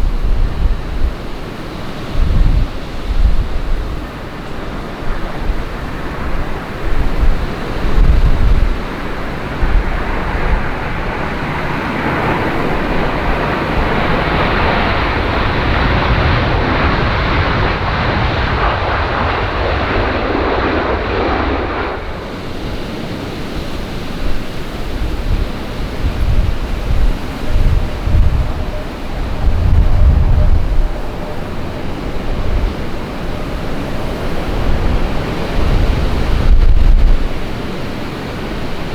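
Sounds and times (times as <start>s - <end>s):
jet airliner passing: 0.0s - 38.9s
wind buffeting microphone: 0.0s - 38.9s.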